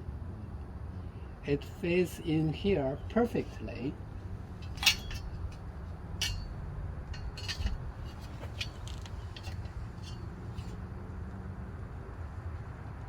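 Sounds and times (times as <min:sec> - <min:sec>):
steady low hum: 0:00.0 - 0:10.8
metallic clicks and clinks: 0:04.6 - 0:05.6, 0:06.2 - 0:10.8.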